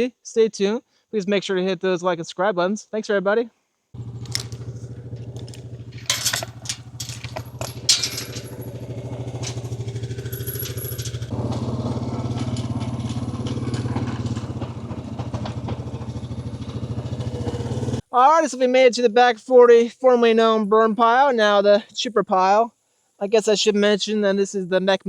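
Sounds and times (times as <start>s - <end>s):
atv engine running: 4.0s - 18.0s
sharp knocks and rattles: 4.0s - 18.0s.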